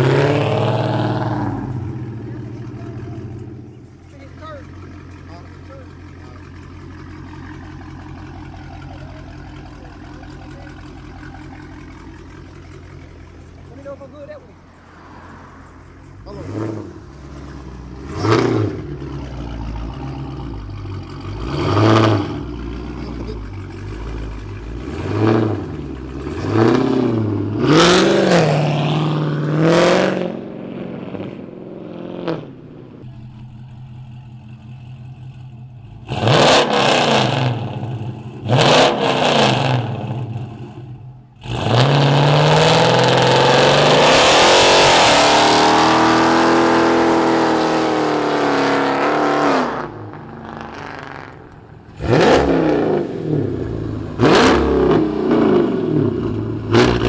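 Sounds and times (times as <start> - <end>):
full-throttle engine run: 0.0 - 31.0, 32.2 - 57.0
car engine revving: 0.0 - 57.0
rumbling engine idle: 1.3 - 26.5, 32.6 - 36.2, 40.0 - 41.6, 50.1 - 52.1.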